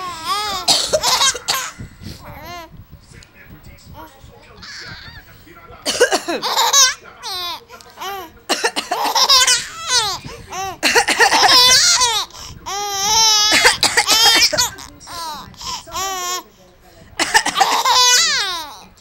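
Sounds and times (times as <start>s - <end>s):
baby laughing: 0.0s - 2.7s, 6.2s - 16.4s, 17.2s - 18.8s.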